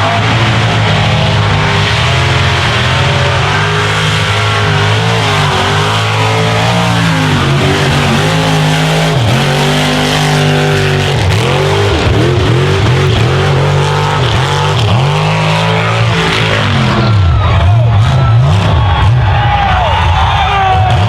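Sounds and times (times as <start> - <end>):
truck engine revving hard: 0.0 - 21.0.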